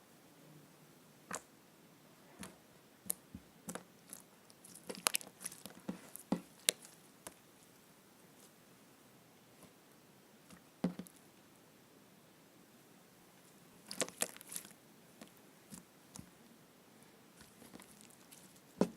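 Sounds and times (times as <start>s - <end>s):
slime squeezed by hand: 4.1s - 7.0s.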